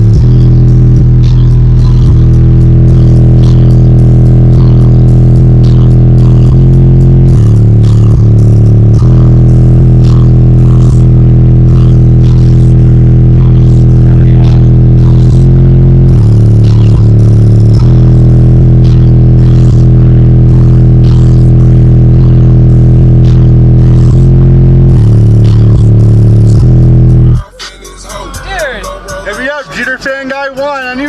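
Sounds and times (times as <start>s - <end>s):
loud bass music from subwoofers: 0.0s - 31.0s.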